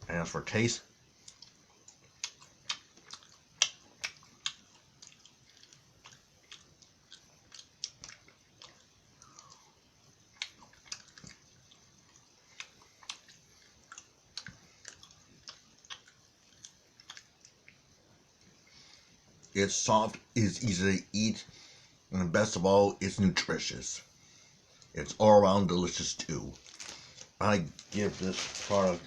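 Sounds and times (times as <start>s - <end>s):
person chewing cheese: 1.2s - 19.5s.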